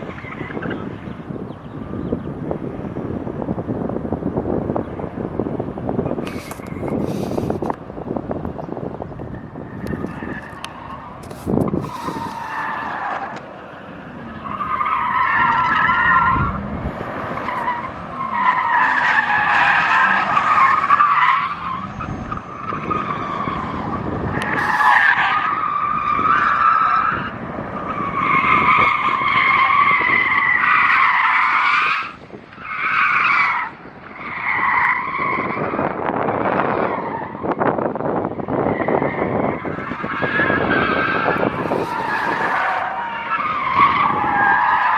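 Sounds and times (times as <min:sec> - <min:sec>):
car tyres squealing: 0:00.0 - 0:44.9.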